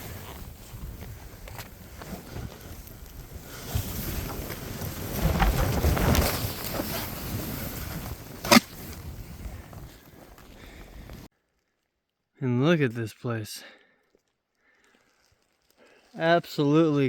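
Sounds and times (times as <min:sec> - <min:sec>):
snowboard swishing through snow: 0:00.0 - 0:11.3.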